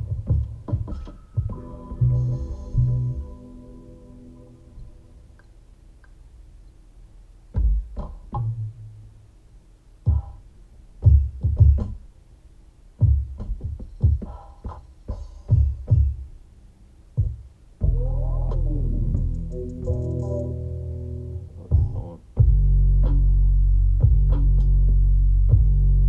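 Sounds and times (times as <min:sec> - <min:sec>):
drum machine beat: 0:00.0 - 0:03.2, 0:07.6 - 0:08.5, 0:10.0 - 0:12.1, 0:13.0 - 0:16.4, 0:17.2 - 0:20.8, 0:21.6 - 0:26.0.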